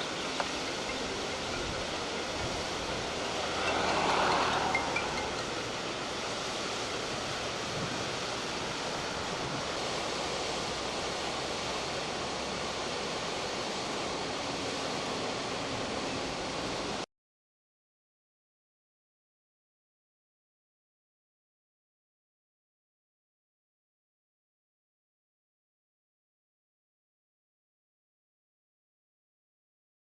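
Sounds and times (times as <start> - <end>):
water rushing: 0.0 - 17.0.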